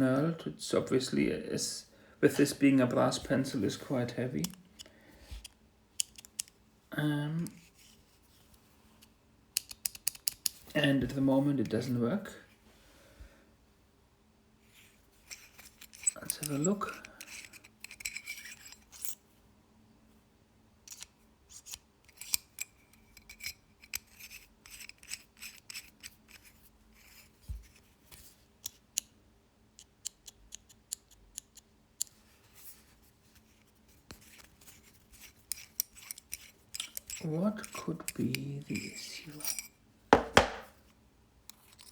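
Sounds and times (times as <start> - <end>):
small metal clicks: 4.4 - 6.6, 9.6 - 10.6, 15.3 - 19.2, 29.8 - 32.2, 34.2 - 38.3, 41.4 - 41.9.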